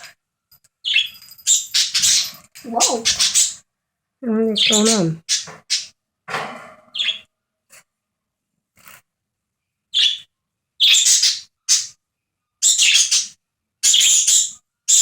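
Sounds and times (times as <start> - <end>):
budgie calling: 0.8 - 3.6, 4.5 - 5.9, 10.0 - 12.0.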